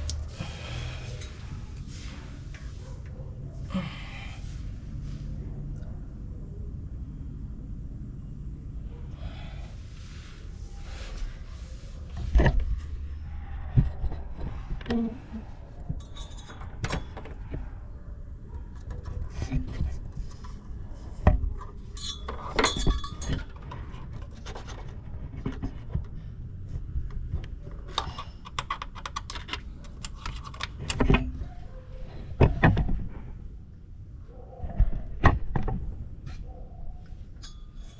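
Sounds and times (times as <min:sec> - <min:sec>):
tools clinking and tapping on metal: 0:21.6 - 0:23.9, 0:37.0 - 0:37.9.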